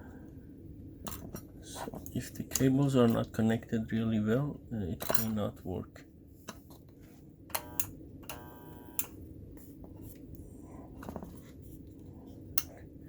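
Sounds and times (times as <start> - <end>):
brief welder buzz: 7.5 - 9.2
spot welder low hum: 7.5 - 9.7.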